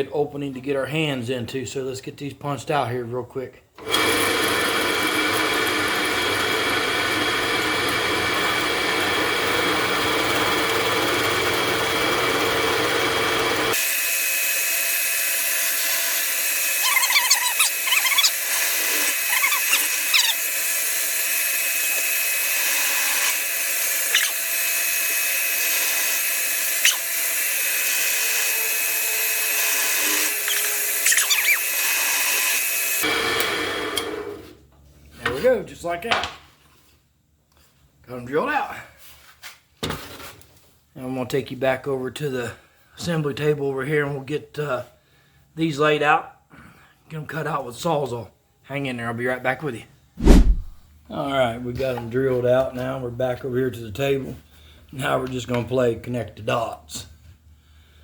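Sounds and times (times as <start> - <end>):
drill press running: 3.8 - 13.9
drill bit squeaking: 16.8 - 20.5, 24.0 - 24.5, 26.8 - 27.1, 29.7 - 32.6.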